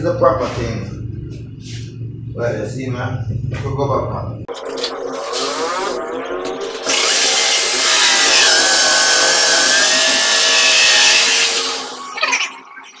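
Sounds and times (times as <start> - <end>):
electric drill boring into wood: 4.8 - 12.2.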